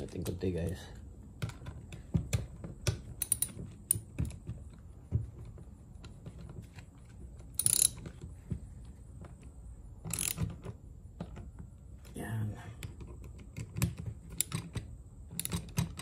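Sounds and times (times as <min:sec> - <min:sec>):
hand tools clicking on metal: 0:01.5 - 0:04.4, 0:07.5 - 0:08.1.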